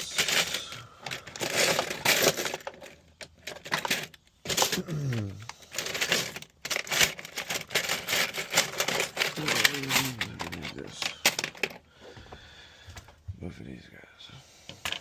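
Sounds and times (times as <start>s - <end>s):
small metal tools clattering: 0.0s - 11.9s.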